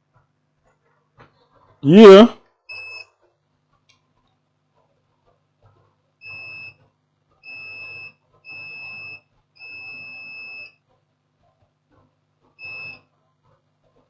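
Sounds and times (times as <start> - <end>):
multimeter continuity beeps: 2.7 - 3.1, 6.2 - 6.8, 7.4 - 10.8, 12.6 - 13.1.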